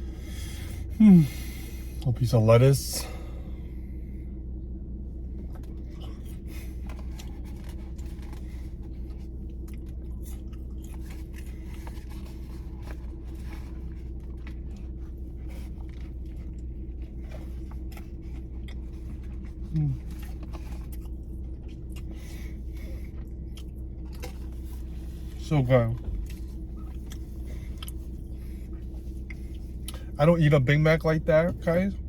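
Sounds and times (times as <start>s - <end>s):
steady low hum: 0.0s - 32.0s
close-up chewing: 5.3s - 25.4s, 26.0s - 30.2s.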